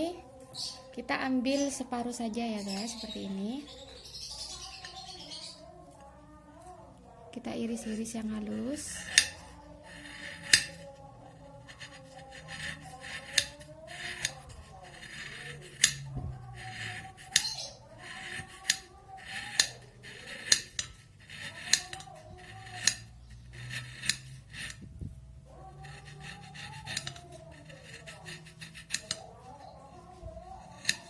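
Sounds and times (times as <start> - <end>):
light scraping: 7.6 - 31.0
knife clicking through sugar: 8.8 - 24.8, 25.7 - 31.0.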